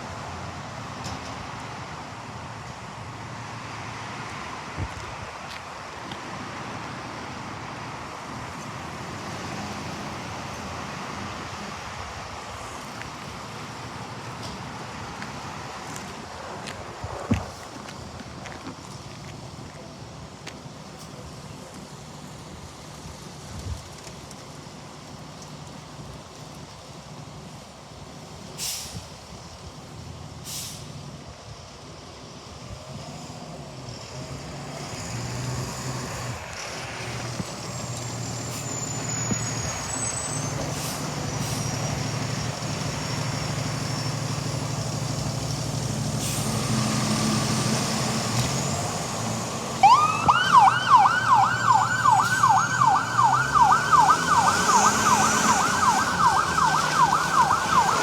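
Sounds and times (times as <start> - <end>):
fire engine motor: 33.6 - 58.0
siren yelping: 49.8 - 58.0.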